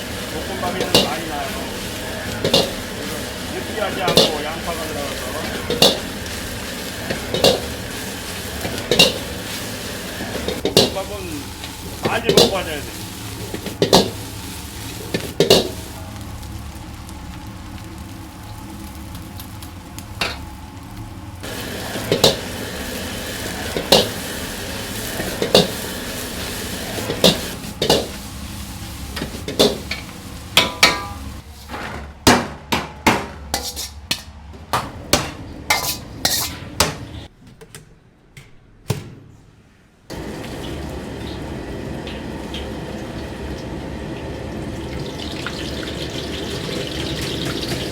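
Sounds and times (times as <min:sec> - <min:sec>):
food sizzling in wok: 0:00.0 - 0:31.7, 0:33.5 - 0:34.1, 0:35.7 - 0:36.7, 0:40.1 - 0:47.9
metal ladle clanging against wok: 0:02.4 - 0:02.9, 0:05.7 - 0:06.1, 0:07.1 - 0:07.8, 0:08.6 - 0:09.3, 0:29.2 - 0:31.4, 0:32.7 - 0:37.0.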